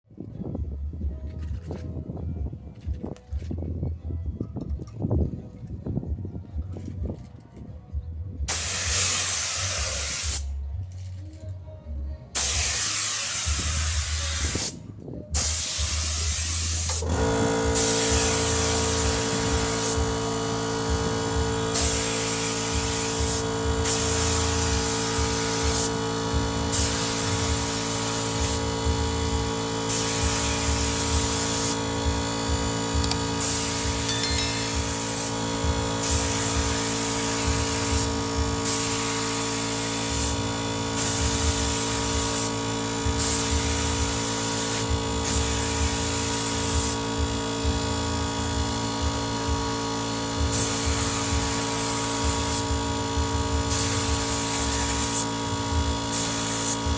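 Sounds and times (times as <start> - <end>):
compressed air blasting: 8.5 - 10.6, 12.4 - 14.8, 15.4 - 56.9
air compressor motor humming: 8.5 - 10.7, 15.4 - 56.9.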